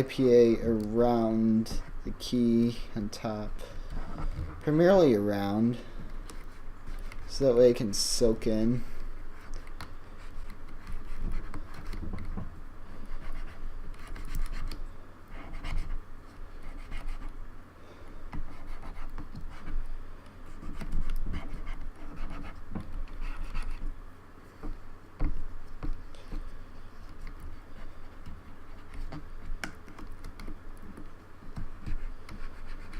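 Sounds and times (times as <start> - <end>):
cotton swab scrubbing keyboard: 25.3 - 32.9.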